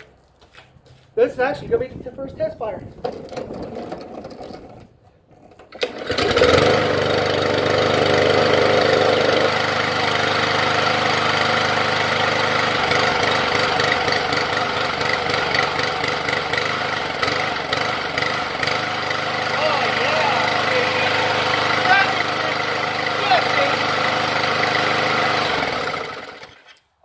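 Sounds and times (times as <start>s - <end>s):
engine pull-started: 3.1s - 10.7s, 12.4s - 26.9s
mower engine running steadily: 5.7s - 26.8s.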